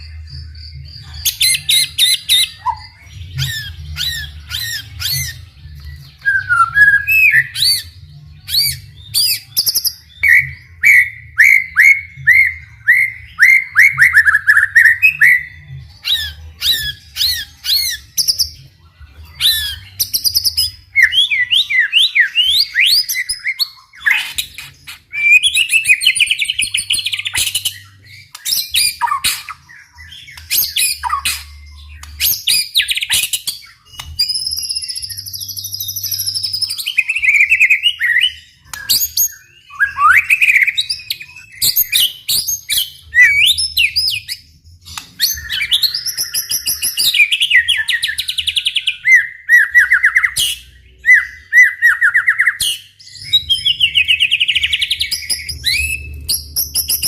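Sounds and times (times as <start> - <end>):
bird singing whistled phrases: 6.2 - 7.9, 19.4 - 57.0.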